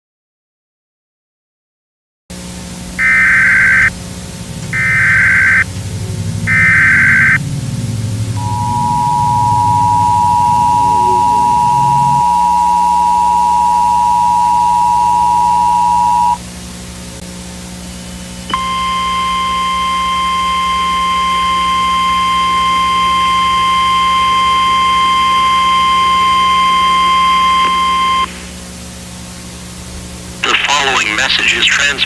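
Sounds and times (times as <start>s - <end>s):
electrical hum and hiss: 2.4s - 32.0s
two-tone alert signal: 3.0s - 3.9s, 4.7s - 5.7s, 6.4s - 7.4s, 8.4s - 16.4s
harsh steady alert tone: 3.0s - 16.4s, 30.4s - 32.0s.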